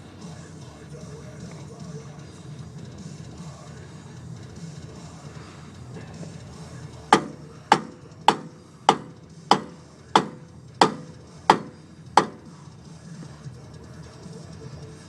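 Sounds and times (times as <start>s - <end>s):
hammer striking metal wheel hub: 7.1s - 12.6s.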